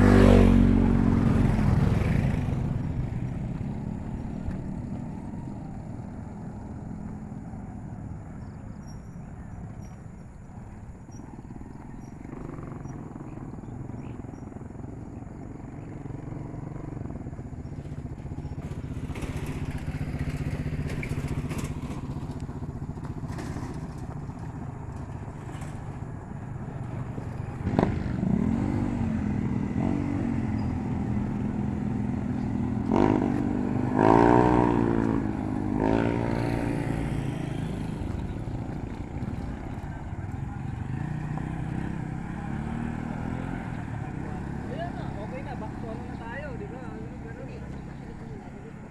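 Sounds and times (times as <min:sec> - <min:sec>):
vehicle engine revving: 0:00.0 - 0:05.4, 0:27.0 - 0:48.9.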